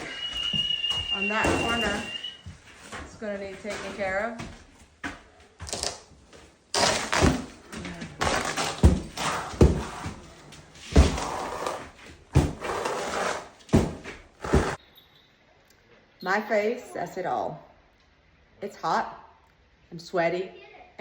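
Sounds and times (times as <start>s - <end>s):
heavy thuds: 0.0s - 4.6s, 7.1s - 14.8s
demolition noise: 0.0s - 4.8s, 6.7s - 14.8s.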